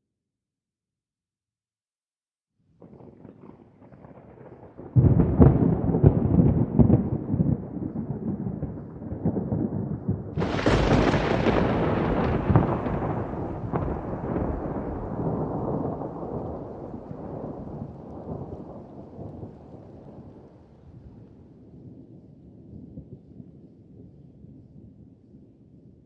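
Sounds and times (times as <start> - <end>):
thunder rumbling and cracking: 2.8 - 23.6.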